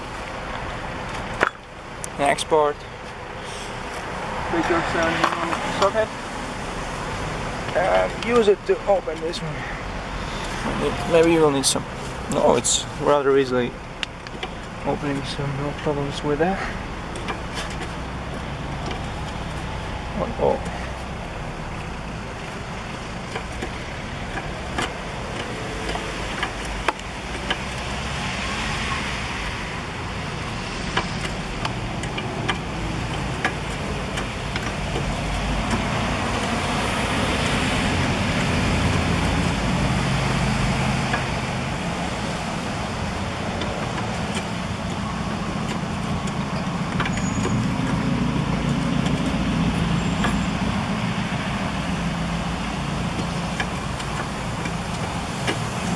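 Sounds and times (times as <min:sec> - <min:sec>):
motor vehicle rumble: 0:00.0 - 0:55.9
hand tools clicking on metal: 0:30.4 - 0:55.9.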